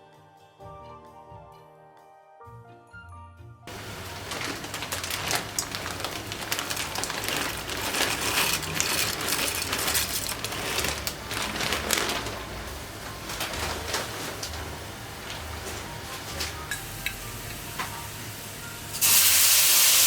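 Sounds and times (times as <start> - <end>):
small objects clicking and clattering: 4.2 - 12.5.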